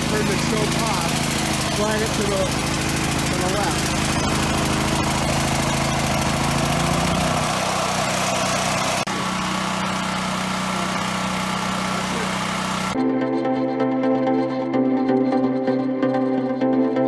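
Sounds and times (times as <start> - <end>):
generator engine running: 0.0 - 13.0
music: 13.0 - 17.0.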